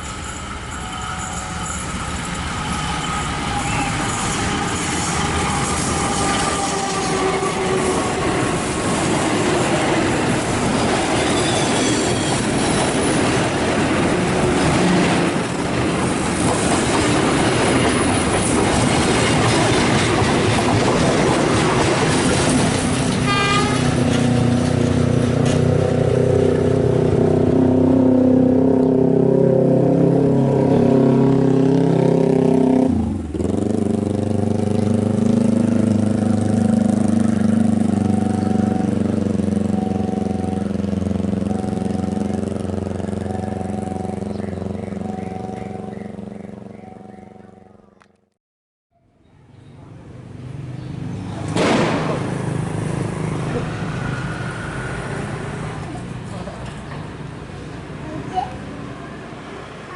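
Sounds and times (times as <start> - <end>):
train wheels rumbling on rails: 0.0 - 47.7, 51.0 - 59.9
train horn: 2.7 - 8.6, 23.2 - 24.1.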